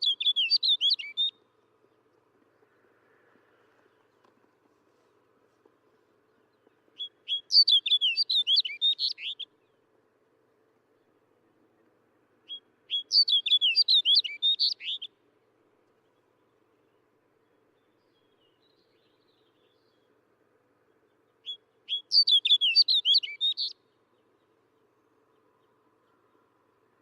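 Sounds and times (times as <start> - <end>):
bird singing warbled phrases: 0.0 - 1.4, 7.0 - 9.8, 12.5 - 15.2, 20.9 - 26.5.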